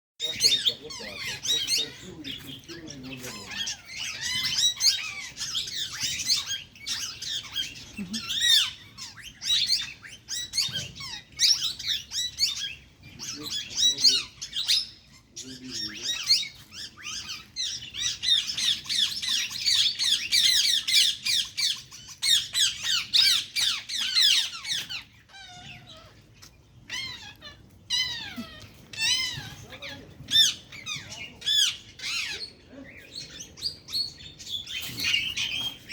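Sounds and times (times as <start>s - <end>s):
small birds chirping and twittering: 0.2s - 35.9s.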